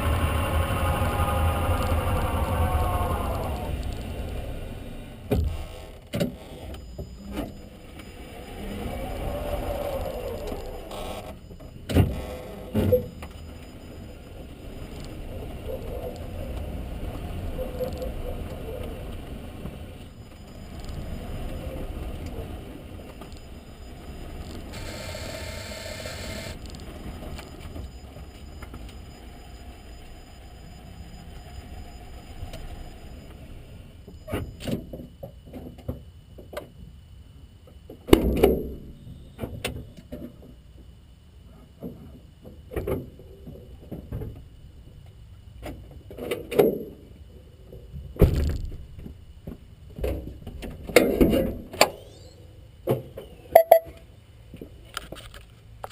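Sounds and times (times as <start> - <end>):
low rumble: 0.0 - 5.7
electric car motor whine: 0.0 - 34.3.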